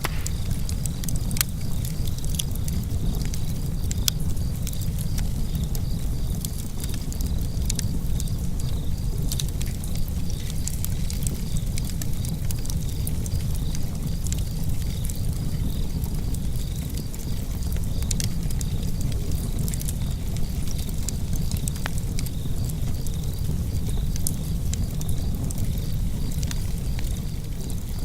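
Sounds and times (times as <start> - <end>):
fire crackling and popping: 0.0 - 28.0
fire flames rumbling: 0.0 - 28.0.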